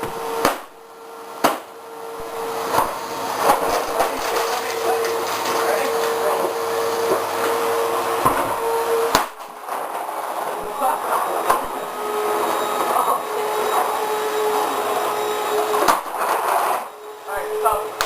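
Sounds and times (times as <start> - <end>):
vacuum cleaner running: 0.0 - 18.0
sharp knock: 0.4 - 0.7, 1.4 - 1.7, 9.1 - 9.4.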